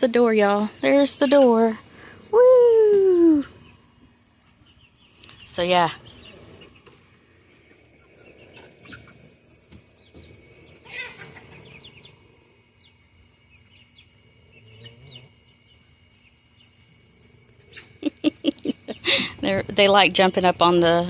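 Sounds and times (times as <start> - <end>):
chickens clucking: 0.4 - 2.3, 3.0 - 20.0
chicken squawk: 10.7 - 12.2.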